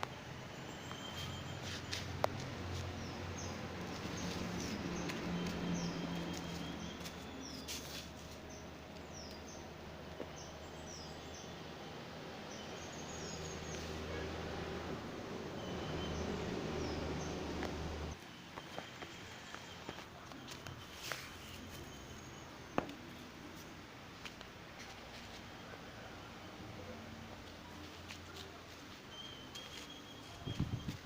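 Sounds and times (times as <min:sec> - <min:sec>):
bird chirping: 0:00.1 - 0:11.7, 0:15.5 - 0:20.0, 0:28.4 - 0:31.0.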